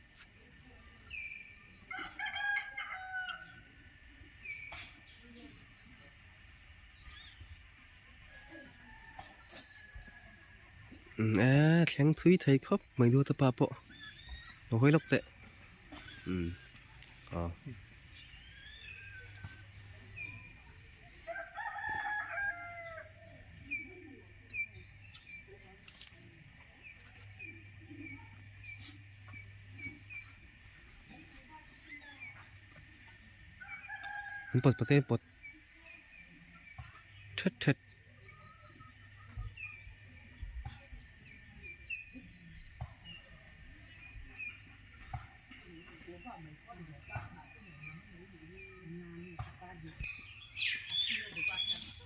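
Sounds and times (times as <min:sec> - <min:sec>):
rooster crowing: 0:01.9 - 0:03.7, 0:21.1 - 0:23.6, 0:33.6 - 0:35.2
high bird chirps: 0:12.3 - 0:34.6, 0:47.2 - 0:52.0.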